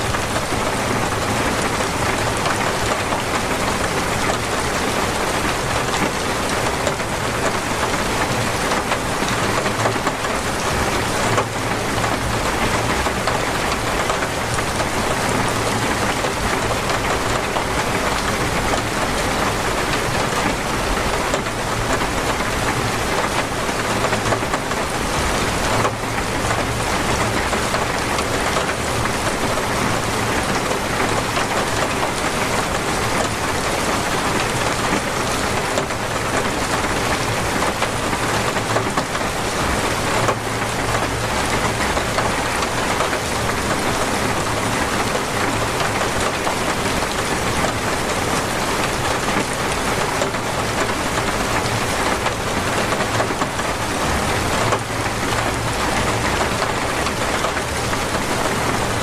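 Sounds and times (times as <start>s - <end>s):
torrential rain pouring: 0.0s - 59.0s.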